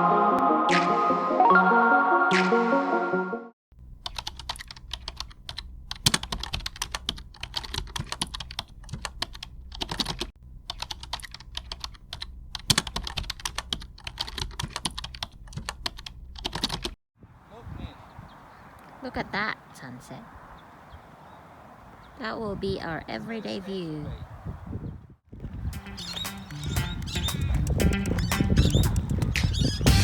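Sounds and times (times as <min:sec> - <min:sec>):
music: 0:00.0 - 0:03.5, 0:25.8 - 0:29.1
rapid irregular clicking: 0:03.9 - 0:17.0.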